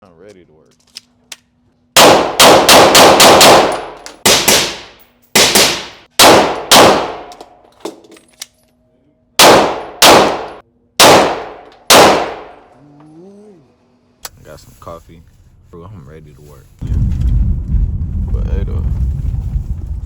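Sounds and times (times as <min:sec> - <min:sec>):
gunshots echoing indoors: 0:02.0 - 0:07.4, 0:09.4 - 0:12.7.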